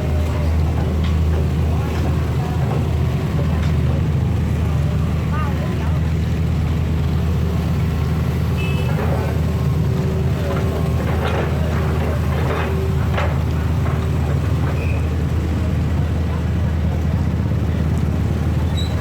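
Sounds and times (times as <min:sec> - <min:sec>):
vehicle engines running: 0:00.0 - 0:19.0
short clatters: 0:08.2 - 0:15.3.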